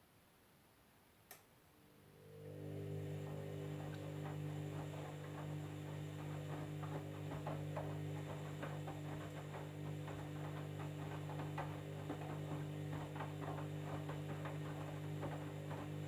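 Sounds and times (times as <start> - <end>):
washing machine motor hum: 1.9 - 16.0
laundry swishing and knocking: 3.3 - 16.0.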